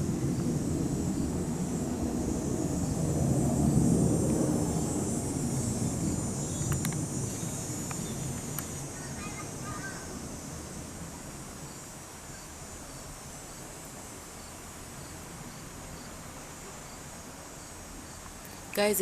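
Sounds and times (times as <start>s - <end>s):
crickets trilling: 0.0s - 19.0s
faint chirps: 6.0s - 10.3s.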